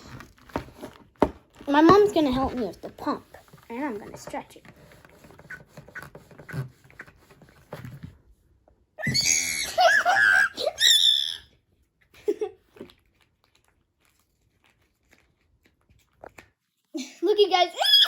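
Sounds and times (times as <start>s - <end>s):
child squealing: 9.0s - 11.5s, 17.7s - 18.0s.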